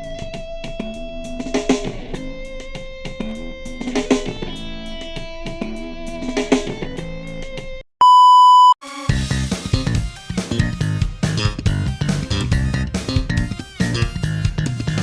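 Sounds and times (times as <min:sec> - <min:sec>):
steady beep: 0:08.0 - 0:08.8
music with heavy bass: 0:09.1 - 0:15.0.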